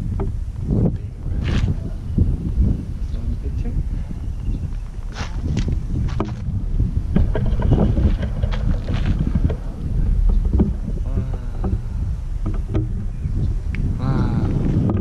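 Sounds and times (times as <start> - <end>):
small knocks: 0.0 - 0.4, 4.7 - 6.5, 7.1 - 15.0
wind buffeting microphone: 0.0 - 15.0.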